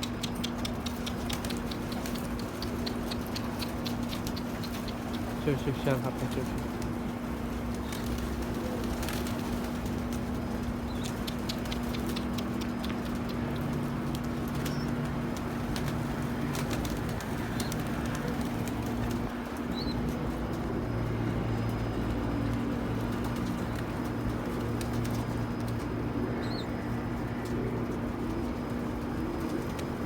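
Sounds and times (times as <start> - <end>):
small clicks of birds landing: 0.0 - 19.7
wing flaps: 0.0 - 20.8
pigeons cooing: 0.0 - 30.0
steady low hum: 0.0 - 30.0.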